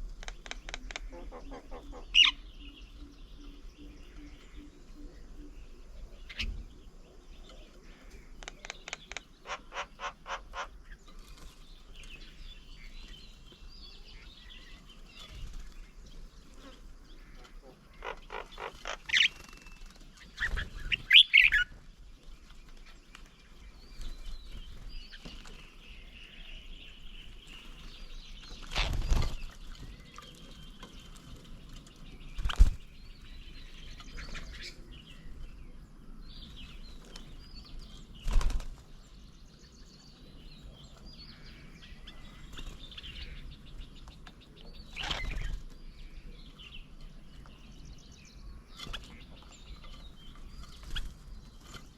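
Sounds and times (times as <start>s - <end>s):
birds chirping: 0.0s - 51.9s
bird wings flapping: 18.8s - 21.2s, 28.6s - 29.6s, 32.4s - 32.9s, 38.2s - 38.9s.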